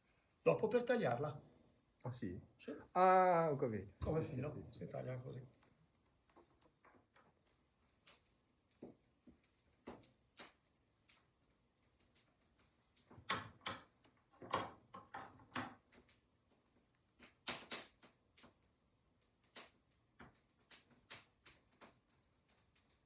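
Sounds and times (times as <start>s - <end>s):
hard objects knocking and clicking: 13.0s - 16.1s.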